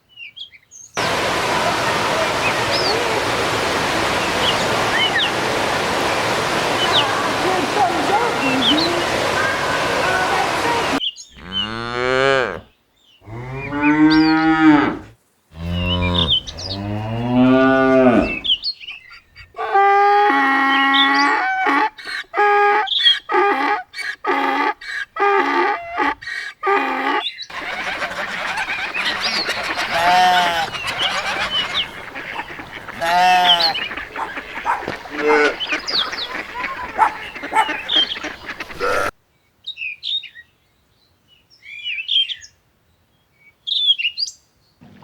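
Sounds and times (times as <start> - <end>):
cattle mooing: 11.4 - 18.6, 29.8 - 35.8, 38.8 - 39.1
waterfowl honking: 19.7 - 39.1.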